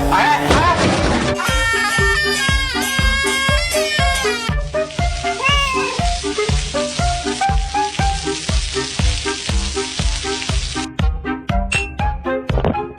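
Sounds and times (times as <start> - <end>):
background music with steady beat: 0.0 - 0.8, 6.2 - 12.9
food sizzling in a frying pan: 3.0 - 10.9.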